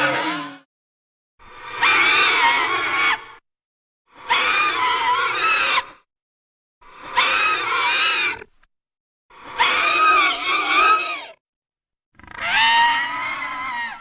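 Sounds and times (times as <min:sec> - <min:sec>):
monster screeching cries: 0:00.0 - 0:00.6, 0:09.6 - 0:11.4, 0:12.2 - 0:14.0.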